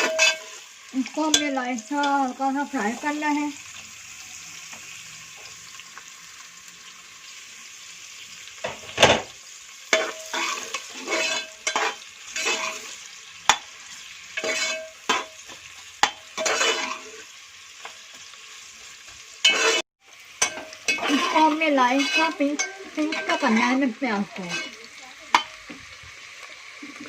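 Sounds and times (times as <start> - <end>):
utensil scraping metal pan: 0.0 - 2.3, 9.9 - 17.3, 19.4 - 19.8, 20.4 - 25.6
onions sizzling in hot oil: 0.0 - 27.0.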